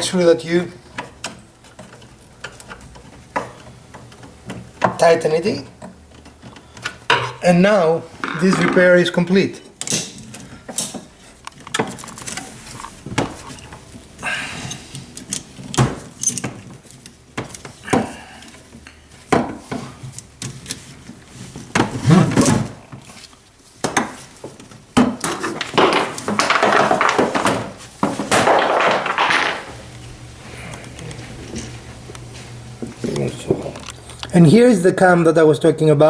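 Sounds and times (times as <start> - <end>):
wooden cabinet being handled: 23.8 - 29.7.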